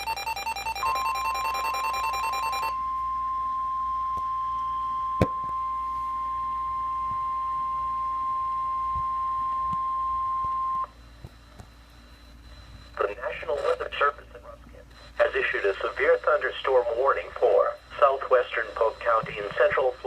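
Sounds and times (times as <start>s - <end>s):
steady high alert tone: 0.0s - 5.8s.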